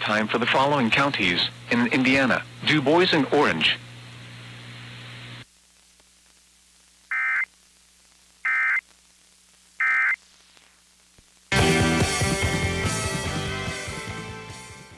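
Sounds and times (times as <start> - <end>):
radio static hiss: 0.0 - 11.6
warbling data bursts: 7.1 - 7.5, 8.5 - 8.8, 9.8 - 10.2.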